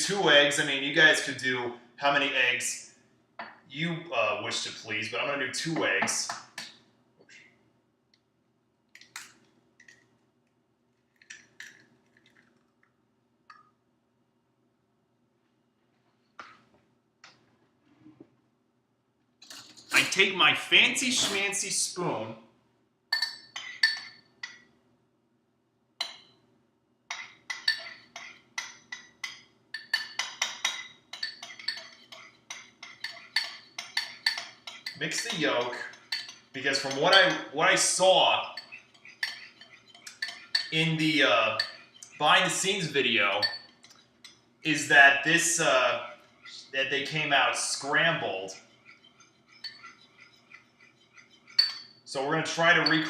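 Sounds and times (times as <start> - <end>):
spoon beating eggs in a bowl: 23.1 - 24.7, 27.1 - 53.0.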